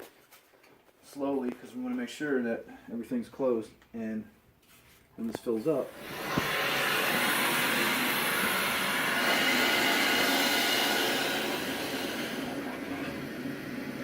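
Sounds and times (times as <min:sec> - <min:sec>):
water hissing through pipe: 0:05.9 - 0:14.0.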